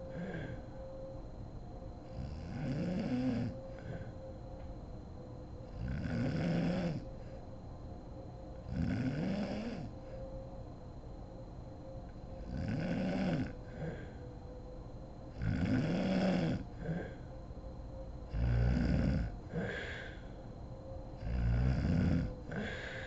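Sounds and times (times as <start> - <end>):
woman snoring heavily: 0.0 - 0.6, 2.1 - 4.1, 5.7 - 7.1, 8.7 - 9.9, 12.4 - 14.2, 15.4 - 17.2, 18.3 - 20.3, 21.2 - 23.0
soft breath: 0.0 - 1.0, 13.6 - 14.4, 16.7 - 17.4, 19.5 - 20.5, 22.2 - 23.0.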